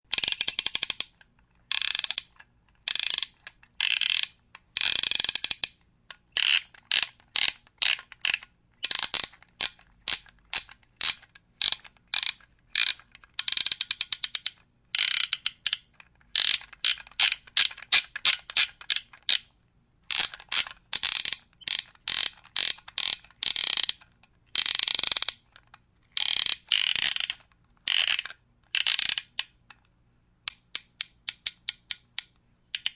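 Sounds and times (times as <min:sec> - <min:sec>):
wind-up toy clockwork clicking: 0:00.1 - 0:29.5, 0:30.5 - 0:32.9.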